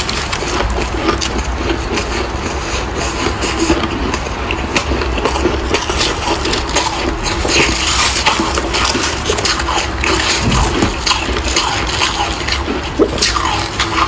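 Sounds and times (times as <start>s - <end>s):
low rumble: 10.2s - 11.5s.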